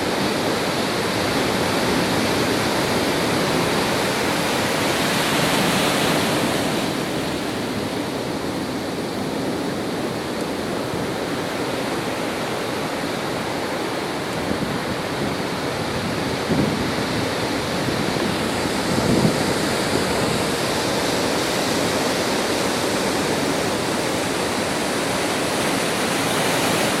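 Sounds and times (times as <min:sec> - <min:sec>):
heavy surf rushing: 0:00.0 - 0:27.0.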